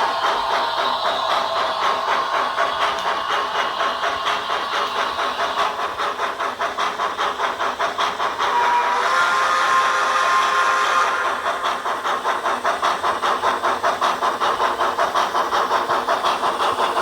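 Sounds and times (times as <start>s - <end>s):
model steam locomotive chuffs: 0.0s - 17.0s.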